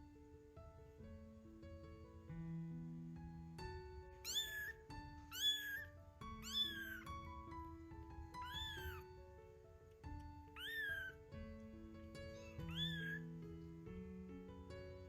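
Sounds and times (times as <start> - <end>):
kitten mewing: 4.2 - 7.0, 8.4 - 9.0, 10.6 - 11.2, 12.4 - 13.2.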